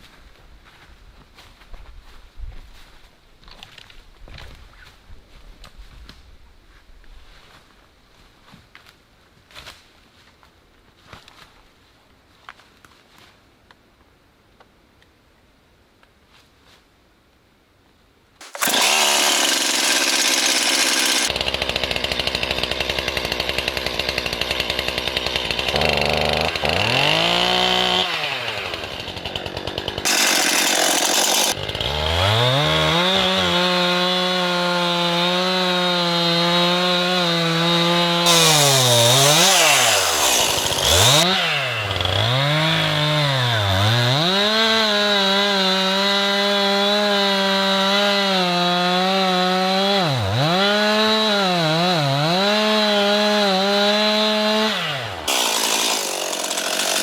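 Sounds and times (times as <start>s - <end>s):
chainsaw cutting into tree trunk: 18.4s - 57.0s.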